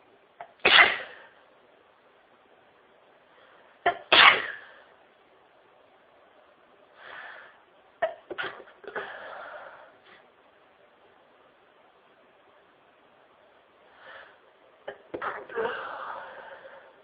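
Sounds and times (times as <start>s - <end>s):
woman sneezing: 0.7s - 1.3s, 14.9s - 16.2s
breath in: 15.6s - 17.0s.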